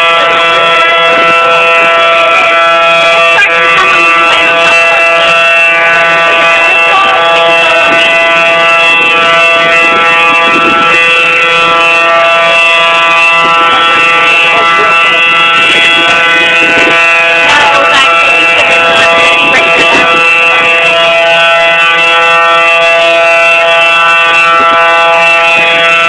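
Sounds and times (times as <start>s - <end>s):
tornado warning sirens: 0.0s - 26.0s.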